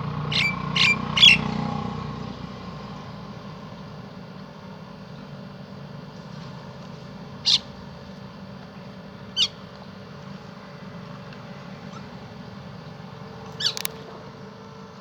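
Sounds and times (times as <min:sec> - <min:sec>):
bird high sharp calls: 0:00.2 - 0:01.6, 0:07.4 - 0:07.8, 0:09.3 - 0:09.6, 0:13.5 - 0:13.9.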